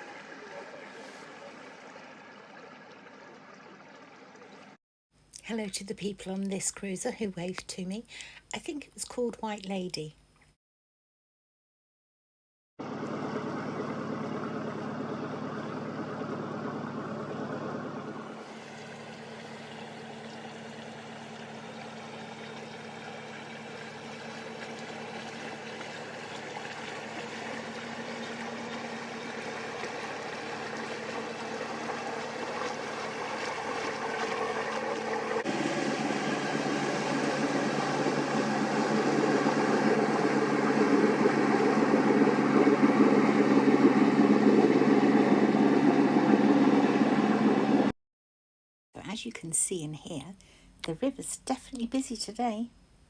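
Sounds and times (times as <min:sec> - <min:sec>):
boat engine running: 0:00.0 - 0:04.8, 0:12.8 - 0:47.9.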